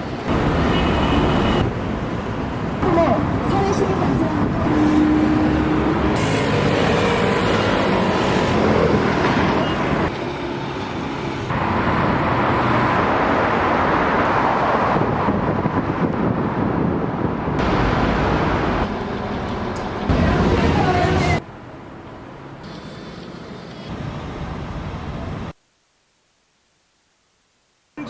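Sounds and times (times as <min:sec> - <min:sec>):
city road traffic: 0:00.0 - 0:25.6.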